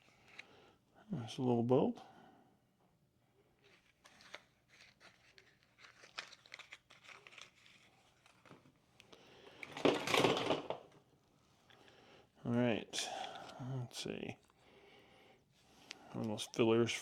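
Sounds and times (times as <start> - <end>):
crinkling rustle: 3.6 - 10.6.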